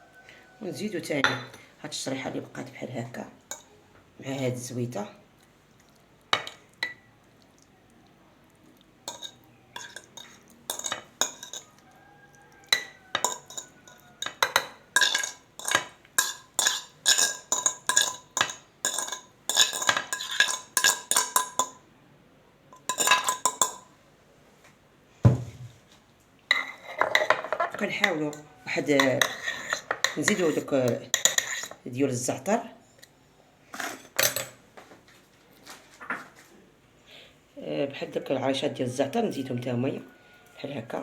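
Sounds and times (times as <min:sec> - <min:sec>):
spoon clinking against jar: 0:09.1 - 0:11.8, 0:12.6 - 0:21.8, 0:22.8 - 0:23.9
dull knock: 0:25.3 - 0:25.6.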